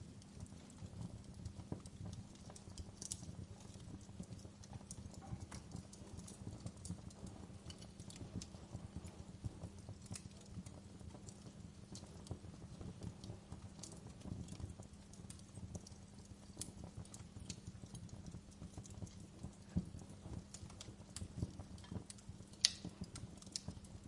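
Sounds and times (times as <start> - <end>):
fire crackling and popping: 0.0 - 24.0.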